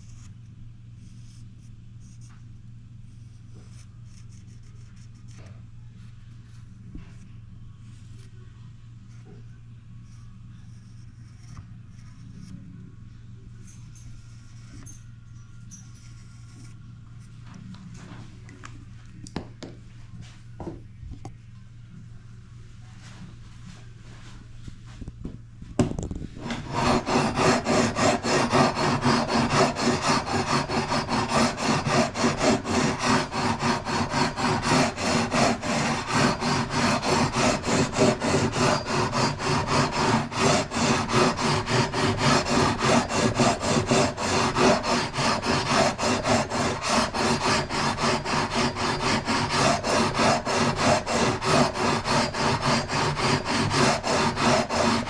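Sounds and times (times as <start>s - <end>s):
hand tool rasping wood: 26.4s - 55.0s.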